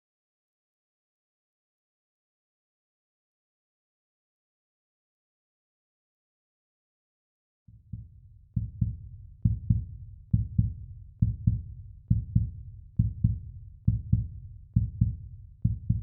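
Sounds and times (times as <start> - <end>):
heartbeat thumping: 7.8 - 16.0.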